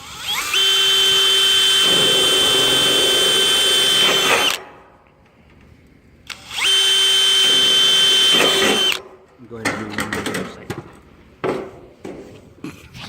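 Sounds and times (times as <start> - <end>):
electric drill into metal: 0.0 - 4.7, 6.3 - 9.0
drill click: 6.2 - 9.0.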